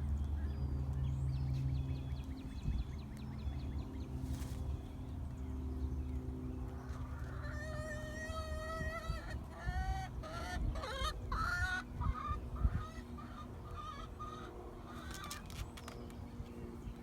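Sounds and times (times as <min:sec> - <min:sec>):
chickens calling: 0:06.8 - 0:15.9.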